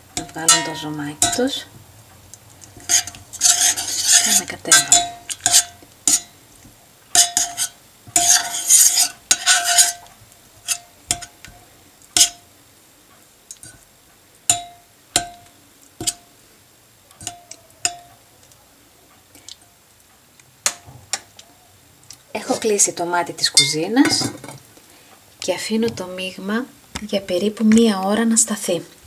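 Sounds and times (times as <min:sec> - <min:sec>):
spoon knocking on pan: 0:00.2 - 0:01.6, 0:02.8 - 0:06.4, 0:12.2 - 0:12.5, 0:14.5 - 0:16.3, 0:17.2 - 0:18.2, 0:20.6 - 0:21.3
spoon scraping saucepan: 0:00.2 - 0:01.6, 0:02.6 - 0:06.3, 0:07.2 - 0:11.5.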